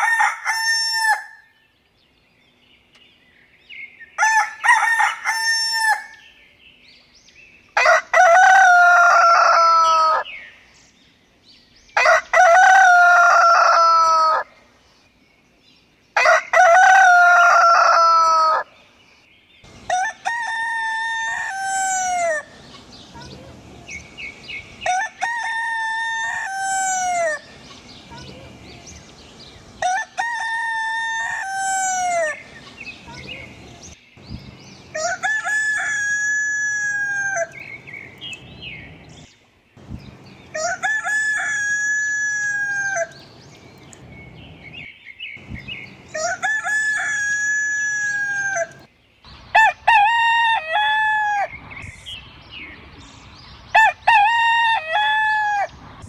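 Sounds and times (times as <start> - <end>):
rooster crowing: 0.0 - 1.4, 4.2 - 6.2, 7.8 - 10.3, 12.0 - 14.5, 16.2 - 18.7, 19.9 - 22.5, 24.8 - 27.4, 29.8 - 32.4, 34.9 - 37.6, 40.5 - 43.2, 46.1 - 48.9, 49.6 - 51.6, 53.8 - 55.8.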